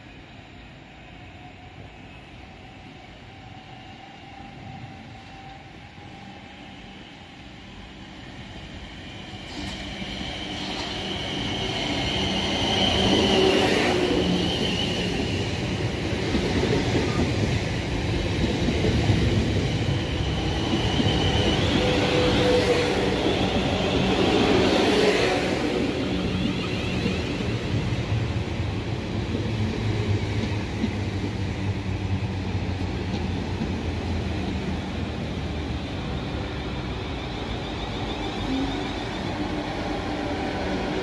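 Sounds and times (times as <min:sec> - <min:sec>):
train rumble: 0:09.4 - 0:41.0.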